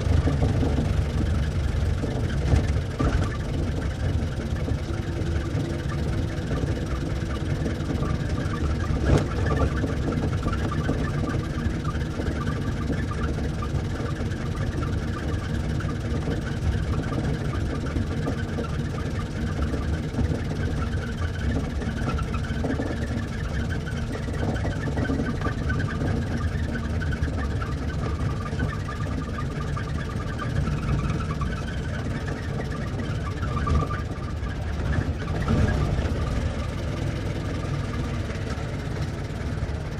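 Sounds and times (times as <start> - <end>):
car engine running: 0.0 - 39.9.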